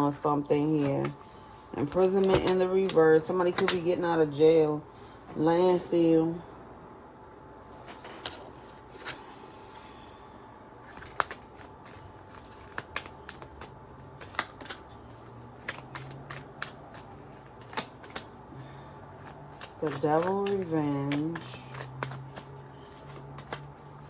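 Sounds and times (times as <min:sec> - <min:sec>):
cards being shuffled: 0:01.8 - 0:03.9, 0:07.8 - 0:09.6, 0:10.8 - 0:24.0.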